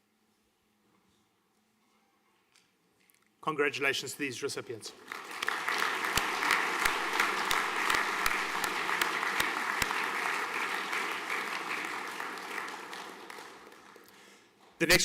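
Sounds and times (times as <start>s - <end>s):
audience applauding: 4.9s - 15.0s
loud single claps: 5.1s - 14.0s.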